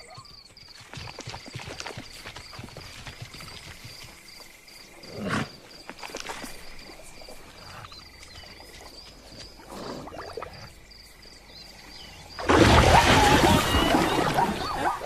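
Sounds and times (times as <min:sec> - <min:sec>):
high insect-like chirping: 0:00.0 - 0:12.5
loud animal call: 0:12.4 - 0:15.0.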